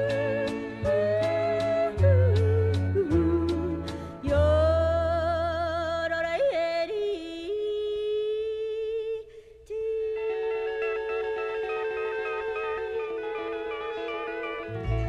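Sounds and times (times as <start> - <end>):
country band playing: 0.0 - 5.4, 10.2 - 15.0
woman yodelling: 7.6 - 14.4.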